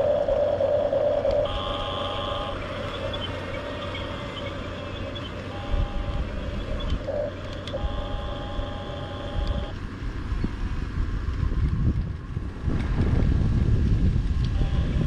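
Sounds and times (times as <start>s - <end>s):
small electric motors whining: 0.0s - 9.8s, 14.4s - 15.0s
low rumble: 0.0s - 15.0s.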